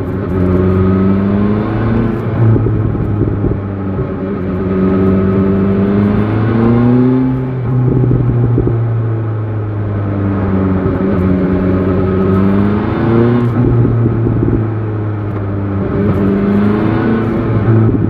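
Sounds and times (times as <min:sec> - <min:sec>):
motorcycle engine revving: 0:00.0 - 0:18.0
wind buffeting microphone: 0:02.0 - 0:09.0, 0:13.2 - 0:14.8, 0:17.4 - 0:18.0.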